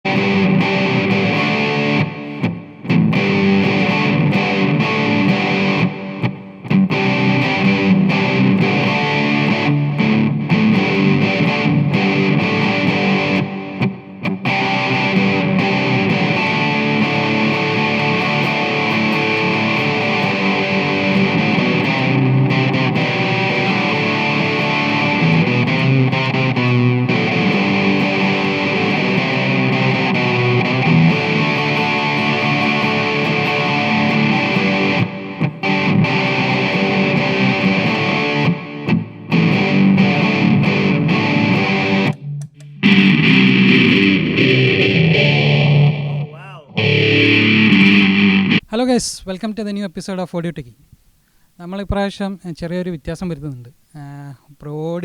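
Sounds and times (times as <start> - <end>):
distorted electric guitar music: 0.0 - 48.8.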